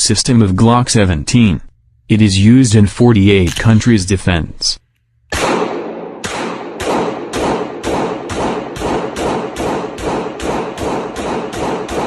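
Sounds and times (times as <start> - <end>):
pistol shots: 5.3 - 12.0.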